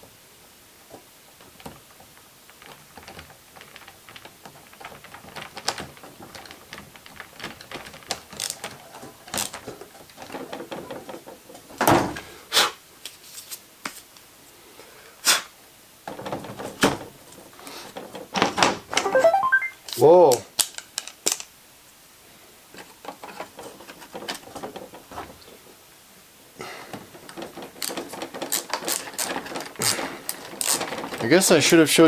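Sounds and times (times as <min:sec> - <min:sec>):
hard plastic parts knocking: 0:01.4 - 0:12.2, 0:26.9 - 0:31.7.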